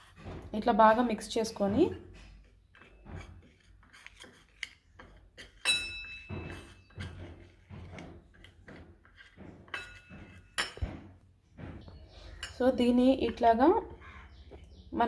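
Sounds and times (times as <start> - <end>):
spoon tapping and scraping: 1.5 - 11.0, 11.8 - 14.8
spoon clinking on bowl: 5.6 - 6.6.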